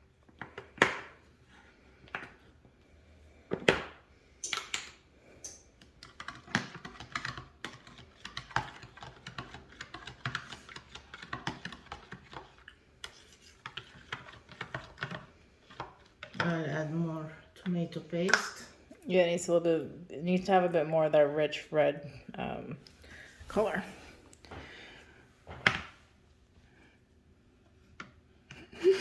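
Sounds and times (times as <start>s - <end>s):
kitchen utensils clicking and tapping: 4.4s - 16.6s.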